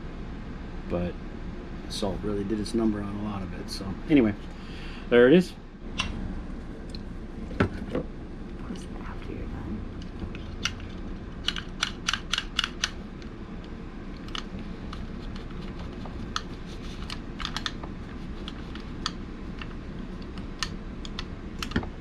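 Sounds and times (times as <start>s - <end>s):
steady low hum: 0.0s - 22.0s
small hard parts clicking: 10.0s - 13.0s.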